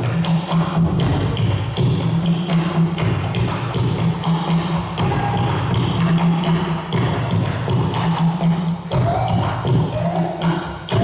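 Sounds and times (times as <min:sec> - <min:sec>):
drums and percussion ensemble: 0:00.0 - 0:11.0.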